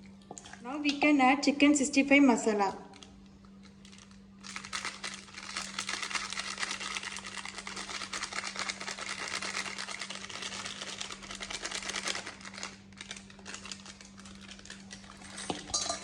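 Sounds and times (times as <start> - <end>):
wet chicken crackling and squishing: 3.0 - 15.8.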